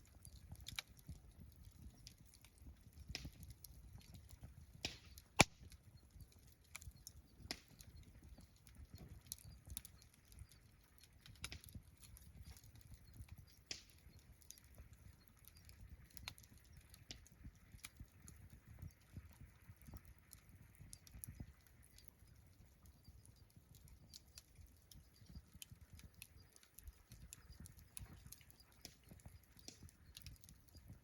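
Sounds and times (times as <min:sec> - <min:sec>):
campfire crackling and popping: 0:00.0 - 0:31.0.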